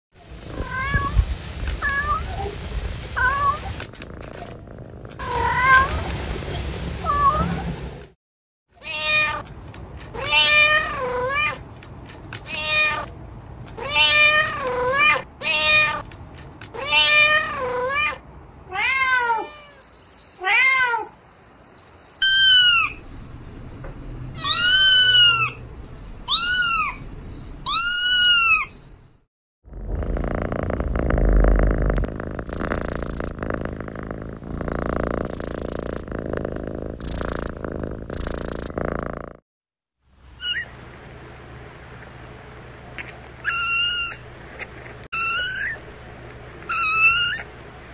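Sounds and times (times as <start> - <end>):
cat purring: 3.6 - 6.3, 29.7 - 39.4
cats meowing: 5.2 - 6.1, 8.8 - 11.6, 12.4 - 13.1, 13.7 - 21.2, 22.2 - 23.0, 24.4 - 25.6, 26.3 - 27.0, 27.7 - 28.7, 43.4 - 44.2, 45.1 - 45.8, 46.6 - 47.6.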